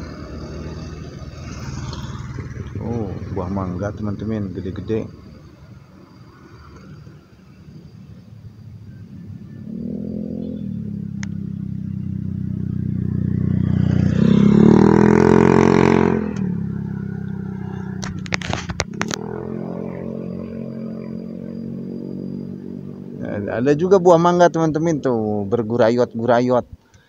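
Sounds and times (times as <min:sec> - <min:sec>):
vehicle engine passing: 0:00.0 - 0:25.3
brief clatter: 0:18.0 - 0:19.2.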